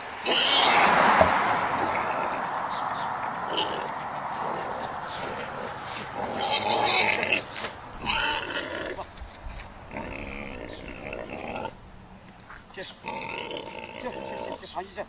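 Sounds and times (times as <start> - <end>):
animal calling in rough bursts: 0.2 - 2.5, 3.5 - 9.1, 9.9 - 11.9, 13.0 - 14.7.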